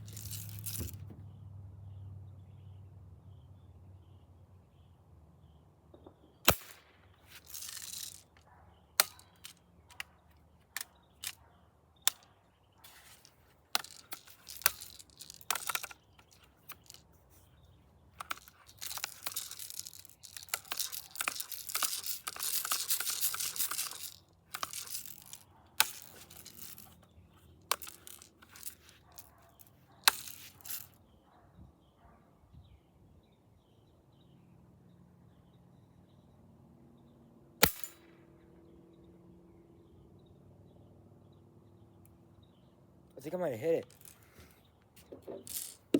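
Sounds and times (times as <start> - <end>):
rustling and scraping: 0.0 - 1.3, 7.2 - 8.4, 12.8 - 31.0, 43.8 - 45.9.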